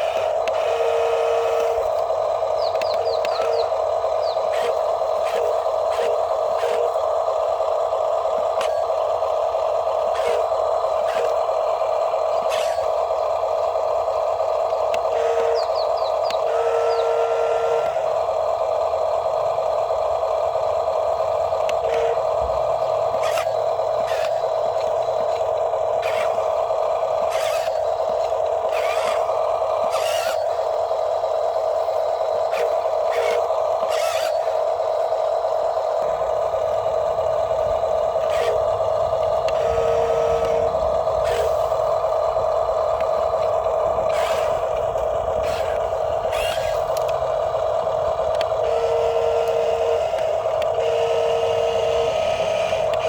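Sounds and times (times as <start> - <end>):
toy electric motor whining: 0.0 - 53.0
scrapes and clicks: 27.3 - 29.3, 43.0 - 47.2
long electronic beeps: 39.5 - 41.8.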